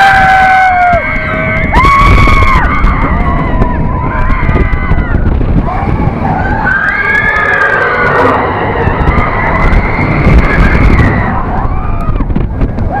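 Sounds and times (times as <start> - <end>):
roller coaster rumble: 0.0 - 13.0
wind buffeting microphone: 0.0 - 13.0
high wavering screech: 6.3 - 11.4.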